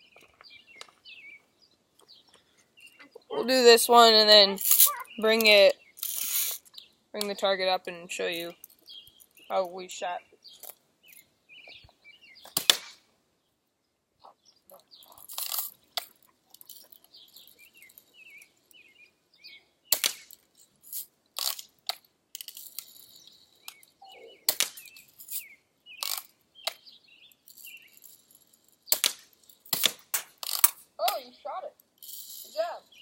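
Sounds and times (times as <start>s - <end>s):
faint bird chirps: 0.0s - 3.5s, 4.9s - 7.0s, 23.0s - 28.0s.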